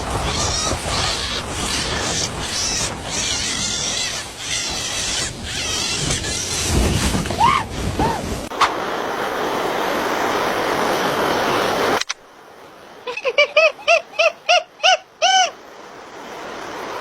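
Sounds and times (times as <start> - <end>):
animal calls rising and falling: 0.2 - 8.8, 13.1 - 15.6.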